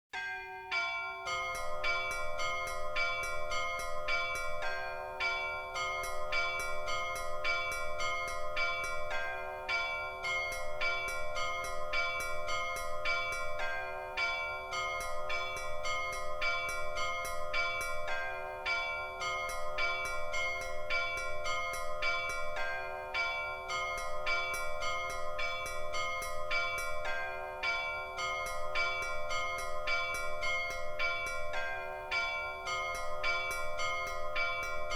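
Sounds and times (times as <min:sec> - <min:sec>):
large bells ringing: 0:00.2 - 0:34.9
low bell steady beat: 0:00.2 - 0:34.9
small church bells ringing quickly: 0:00.2 - 0:34.9.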